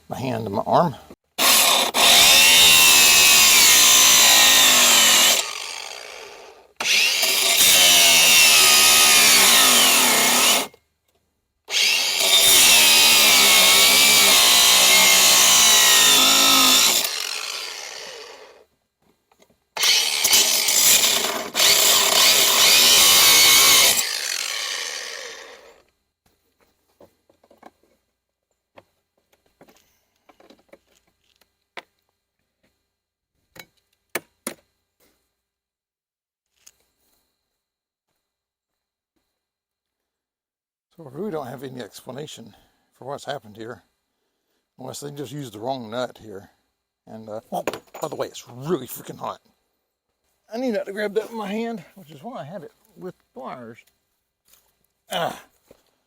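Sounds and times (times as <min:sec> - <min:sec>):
angle grinder grinding metal: 0:01.4 - 0:10.7, 0:11.7 - 0:18.6, 0:19.8 - 0:25.8.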